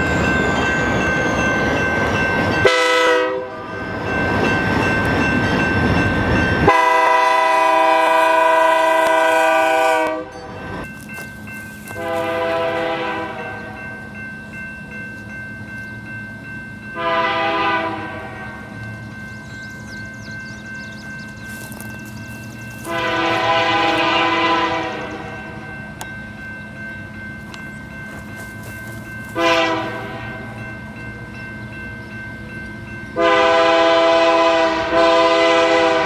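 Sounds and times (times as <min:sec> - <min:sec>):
passing train rushing: 0:00.0 - 0:36.0
train horn chord: 0:02.6 - 0:03.7, 0:06.6 - 0:10.5, 0:11.9 - 0:13.9, 0:17.0 - 0:18.7, 0:22.8 - 0:25.6, 0:29.3 - 0:30.6, 0:33.2 - 0:36.0.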